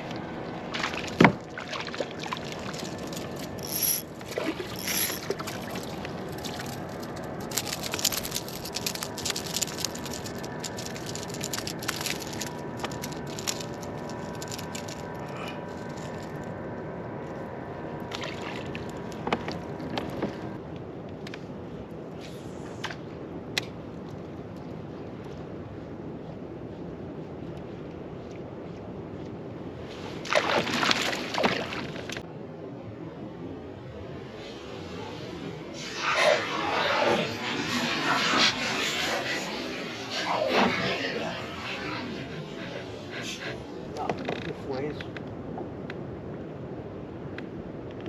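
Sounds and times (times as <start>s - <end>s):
water sloshing around kayak: 0.6s - 3.5s.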